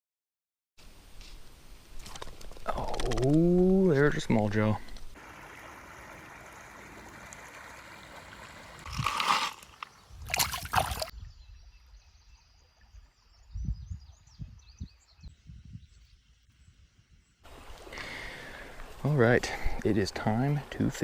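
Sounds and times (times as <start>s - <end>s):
river water sloshing around kayak: 5.2s - 11.1s
water splashes: 5.2s - 11.1s.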